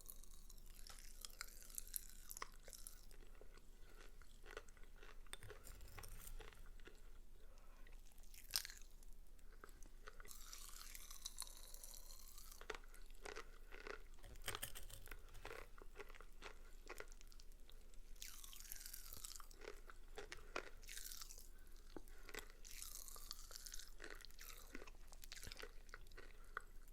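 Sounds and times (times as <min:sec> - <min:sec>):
chewing and crunching: 0:00.0 - 0:26.9
popping candy crackling: 0:12.5 - 0:16.5.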